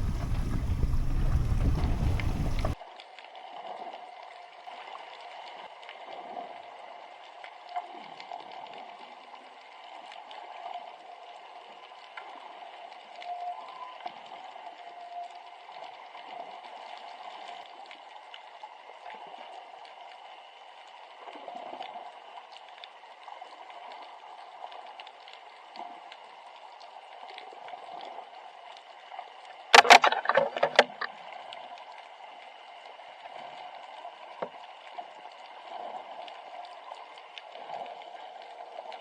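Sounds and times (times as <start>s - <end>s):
water lapping against boat hull: 0.0s - 2.8s.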